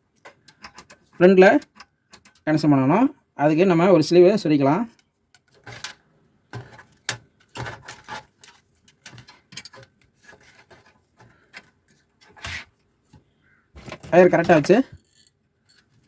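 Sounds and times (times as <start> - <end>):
rubbing of wires: 5.5 - 13.2, 13.8 - 16.0.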